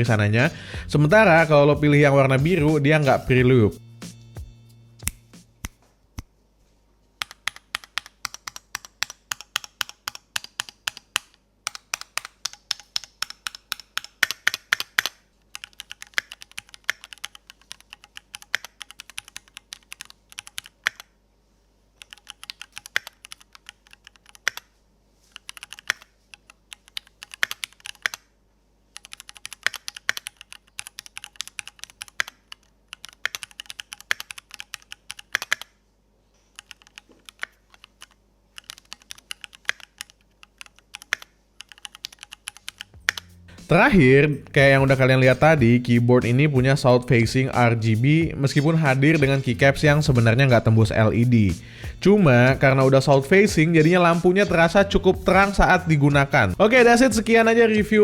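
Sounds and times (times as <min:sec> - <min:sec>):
mechanical keyboard typing: 0:07.2 - 0:21.1, 0:22.0 - 0:24.7, 0:25.3 - 0:28.3, 0:28.9 - 0:35.8, 0:36.5 - 0:43.3.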